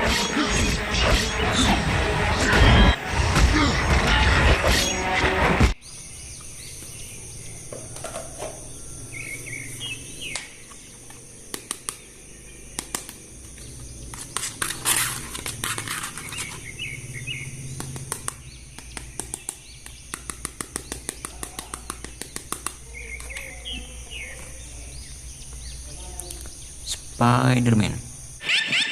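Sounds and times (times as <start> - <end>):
faint bird chirps: 20.8 - 28.9.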